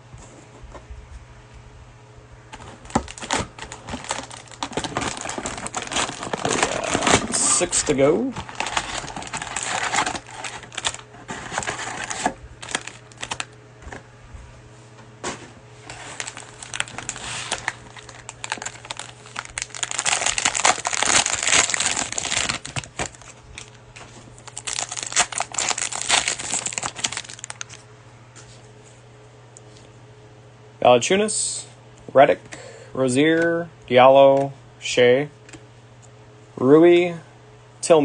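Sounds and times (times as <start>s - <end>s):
plastic wrapper crinkling: 2.6s - 13.6s, 15.8s - 27.8s.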